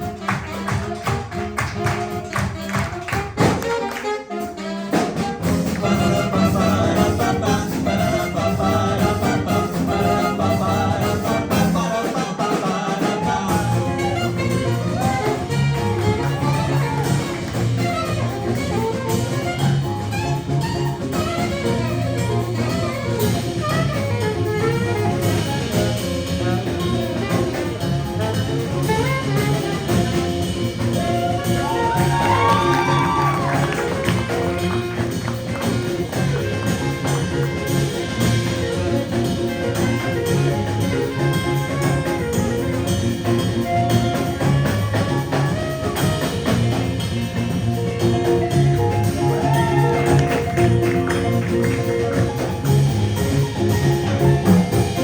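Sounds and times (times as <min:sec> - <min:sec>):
drum kit: 0:00.0 - 0:55.0
horn lines: 0:00.0 - 0:55.0
jazz-fusion band playing: 0:00.0 - 0:55.0.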